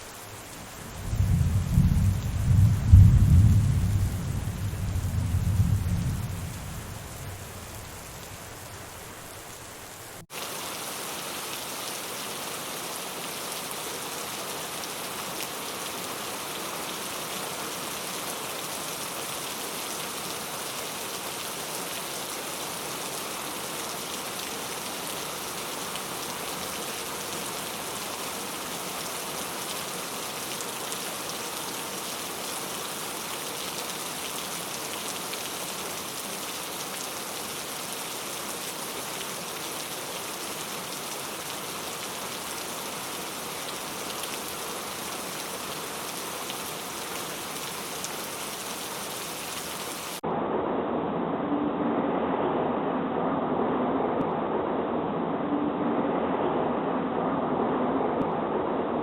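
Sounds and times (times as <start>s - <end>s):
rain falling: 0.0s - 50.2s
thunder rumble: 0.6s - 8.7s.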